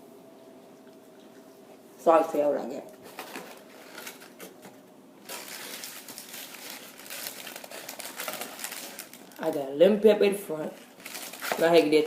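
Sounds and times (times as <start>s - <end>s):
food packaging crinkling: 3.0s - 9.7s, 10.7s - 12.0s.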